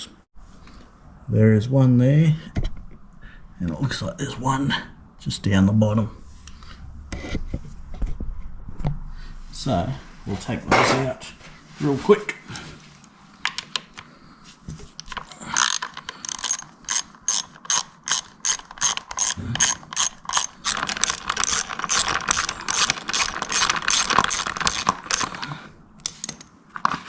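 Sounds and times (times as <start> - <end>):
ratchet wrench clicking: 15.6 - 25.3.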